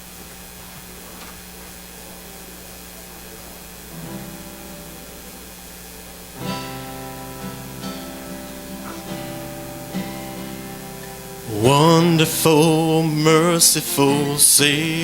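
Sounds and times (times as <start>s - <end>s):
loud full chord: 3.9s - 15.0s
instrumental worship music: 6.4s - 15.0s.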